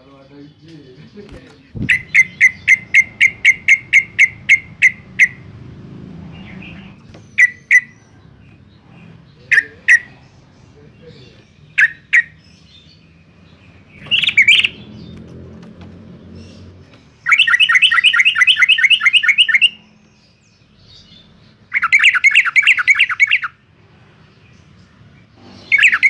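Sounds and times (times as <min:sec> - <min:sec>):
bird calling sharp notes: 0:01.7 - 0:08.6, 0:09.4 - 0:10.4, 0:11.1 - 0:12.9, 0:13.9 - 0:15.2, 0:16.4 - 0:20.1, 0:21.6 - 0:23.6, 0:25.4 - 0:26.0.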